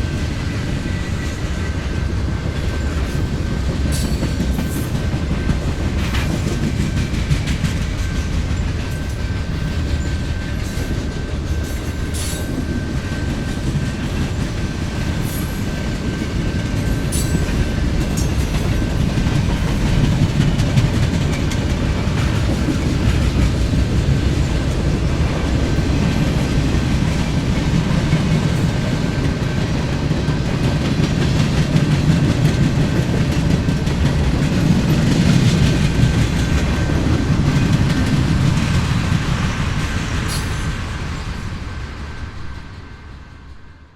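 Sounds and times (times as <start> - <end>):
train rumbling along track: 0.0 - 43.9.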